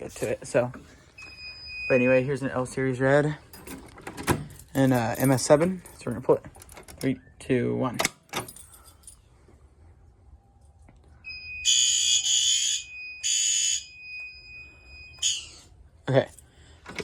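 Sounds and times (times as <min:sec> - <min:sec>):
fire alarm horn blasts: 0:11.2 - 0:15.8.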